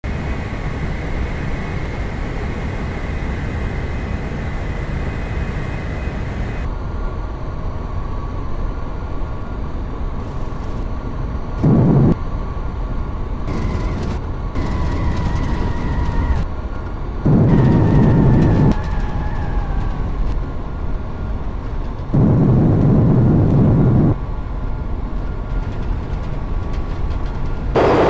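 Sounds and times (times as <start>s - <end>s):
airliner engines rumbling: 0.0s - 28.0s
faint high whine: 0.1s - 20.0s, 27.8s - 28.0s
loud low blast: 22.2s - 24.2s, 27.8s - 28.0s.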